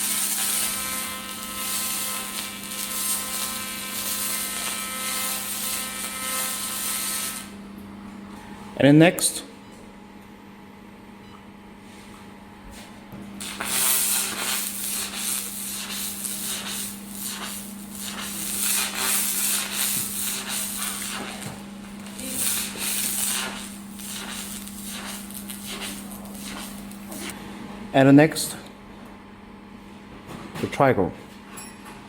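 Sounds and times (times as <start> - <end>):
laser crackling hiss on metal: 0.0 - 7.5, 13.4 - 27.4.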